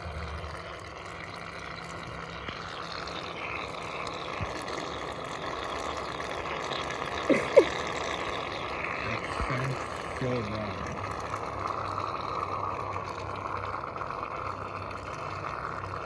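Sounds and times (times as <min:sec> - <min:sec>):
aerosol foam hissing: 0:07.3 - 0:07.7.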